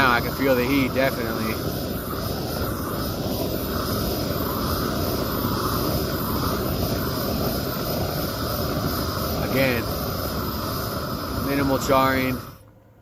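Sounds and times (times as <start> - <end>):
gas torch flame rushing: 0.0 - 12.7.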